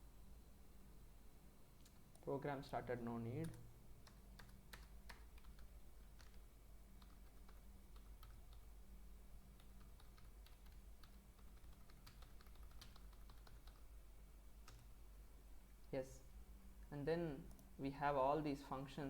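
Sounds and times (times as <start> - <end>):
low steady hum: 0.0 - 19.0
keyboard typing clicks: 9.6 - 13.8.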